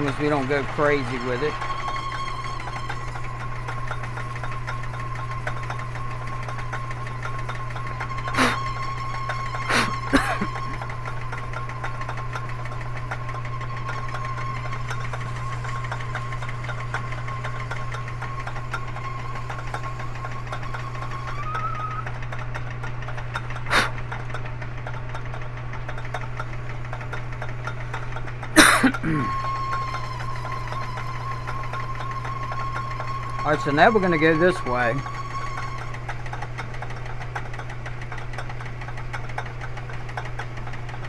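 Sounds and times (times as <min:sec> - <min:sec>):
electric motor humming and whining: 0:00.0 - 0:41.0
boring tool cutting plastic: 0:08.2 - 0:10.9, 0:23.6 - 0:23.9.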